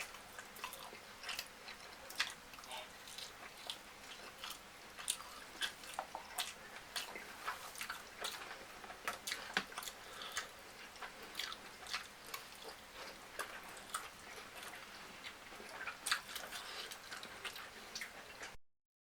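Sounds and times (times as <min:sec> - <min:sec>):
person chewing with mouth smacks: 0:00.0 - 0:18.6.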